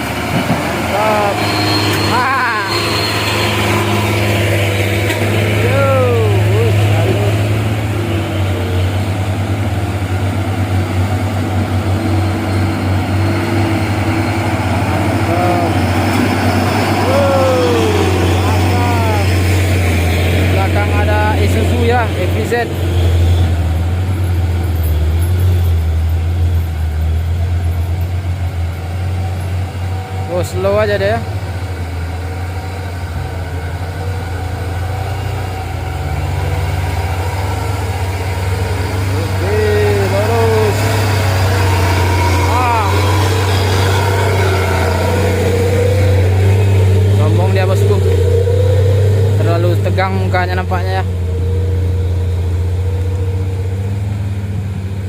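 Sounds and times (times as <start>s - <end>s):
road noise: 0.0s - 55.0s
truck engine running: 0.0s - 55.0s.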